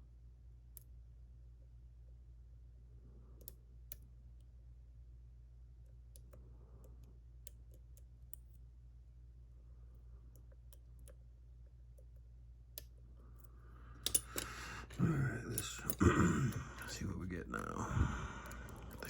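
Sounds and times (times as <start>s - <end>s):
steady low hum: 0.0s - 19.0s
lock-picking tool clicks: 14.0s - 14.6s.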